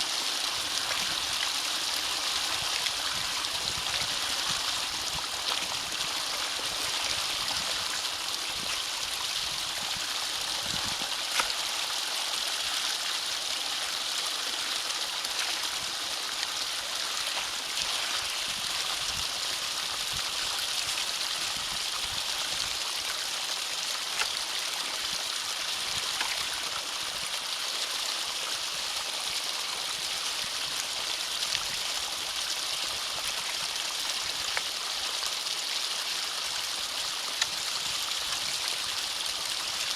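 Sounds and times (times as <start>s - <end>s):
water flowing through culvert: 0.0s - 39.9s.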